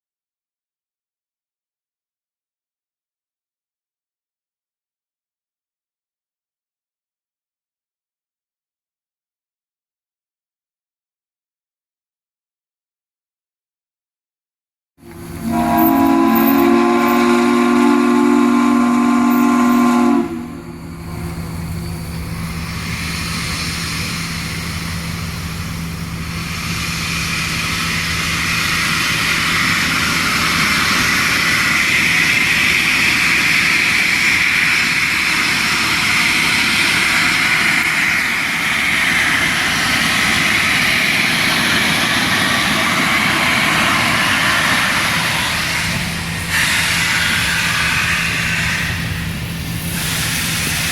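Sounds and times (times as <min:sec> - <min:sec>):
steam locomotive chime whistle: 0:15.1 - 0:22.9
loud hiss of escaping steam: 0:20.4 - 0:50.9.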